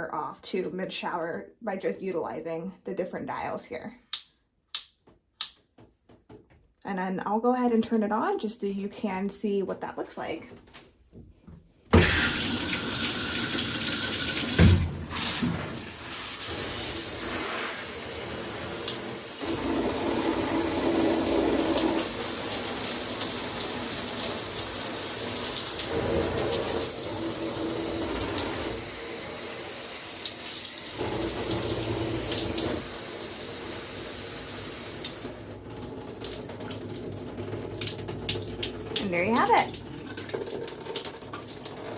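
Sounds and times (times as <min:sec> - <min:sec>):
shower water spraying: 0:12.0 - 0:35.3.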